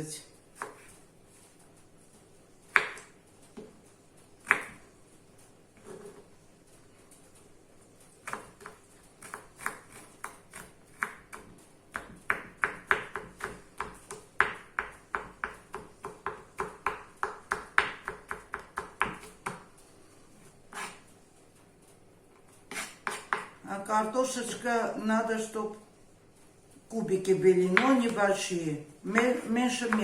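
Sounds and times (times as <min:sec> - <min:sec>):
knife chopping on cutting board: 0:02.7 - 0:03.1, 0:04.4 - 0:04.8, 0:08.2 - 0:19.6, 0:22.7 - 0:23.6, 0:29.1 - 0:30.0.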